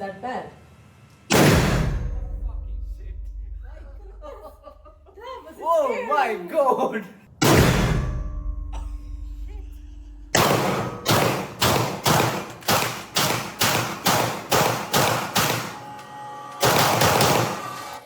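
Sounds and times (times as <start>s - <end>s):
loud ringing bang: 1.3s - 5.1s, 7.4s - 12.2s
sharp bangs: 1.3s - 5.1s, 7.3s - 18.0s.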